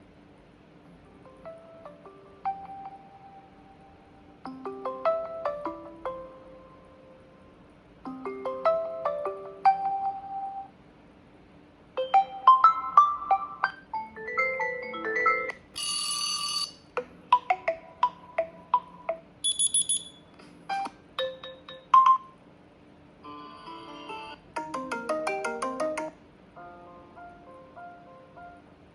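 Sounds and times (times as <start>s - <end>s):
ringtone melodies: 1.1s - 7.2s, 8.1s - 10.7s, 12.0s - 16.8s, 17.4s - 20.2s, 20.8s - 22.4s, 23.4s - 28.6s
bright ringing chime: 19.4s - 20.2s.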